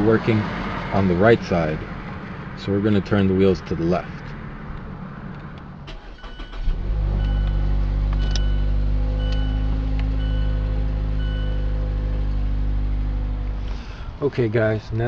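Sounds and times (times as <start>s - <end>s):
car engine starting and idling: 0.0s - 14.8s
car warning chime beeping: 5.9s - 12.4s.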